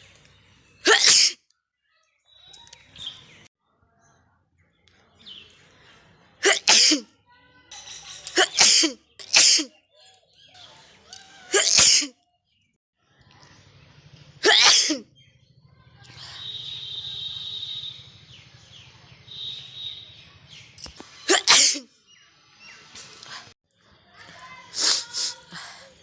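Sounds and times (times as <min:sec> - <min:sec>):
person sneezing: 0:00.9 - 0:01.4, 0:06.4 - 0:07.0, 0:08.4 - 0:09.7, 0:11.5 - 0:12.1, 0:14.4 - 0:15.0, 0:21.3 - 0:21.9, 0:24.8 - 0:25.5
breaths and sniffs: 0:22.9 - 0:23.6, 0:24.7 - 0:26.0.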